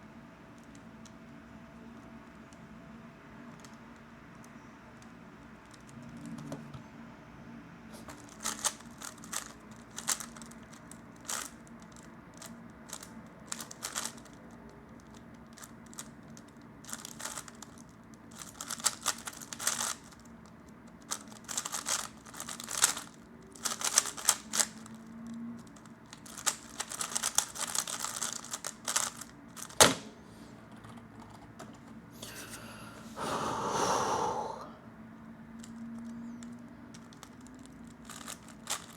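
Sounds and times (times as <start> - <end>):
puzzle cube clicking turns: 8.0 - 20.3, 21.0 - 24.9, 25.6 - 32.0, 35.6 - 38.9.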